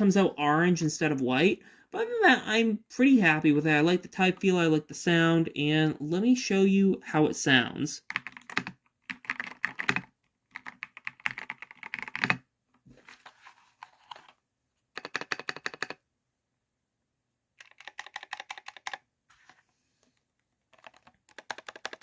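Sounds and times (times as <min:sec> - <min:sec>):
mechanical keyboard typing: 0:08.1 - 0:12.4, 0:14.9 - 0:16.0, 0:17.6 - 0:19.0, 0:20.7 - 0:22.0.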